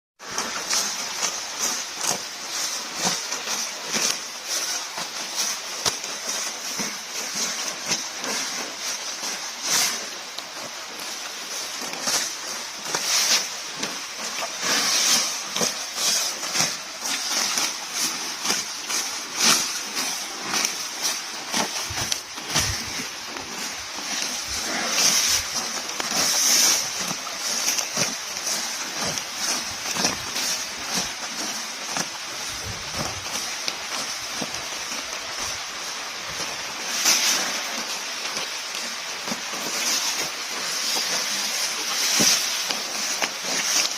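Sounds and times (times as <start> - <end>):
buffalo tearing and chewing grass: 0.2 - 43.9
rustle: 0.2 - 43.9
steady hiss: 0.2 - 43.9.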